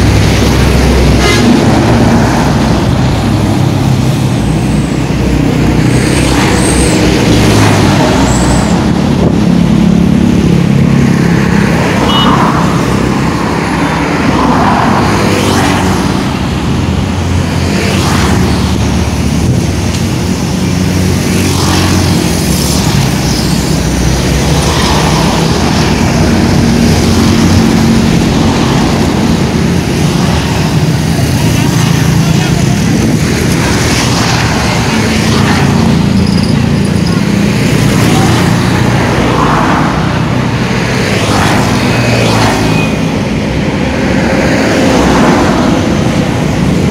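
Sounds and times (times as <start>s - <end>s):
heavy vehicle engine rumble: 0.0s - 46.9s.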